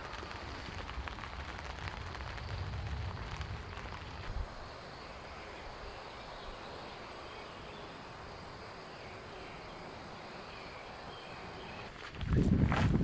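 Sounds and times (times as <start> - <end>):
rain falling: 0.0 - 7.3.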